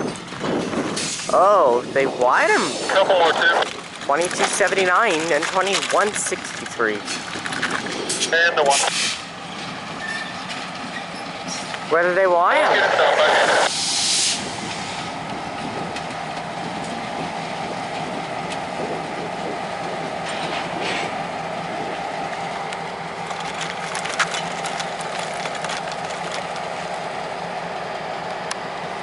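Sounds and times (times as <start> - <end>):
train cars clicking and knocking: 0.0 - 1.4, 2.0 - 13.0, 13.7 - 29.0
train rail rumble: 0.0 - 29.0
air hiss burst: 8.9 - 9.2, 13.7 - 15.0.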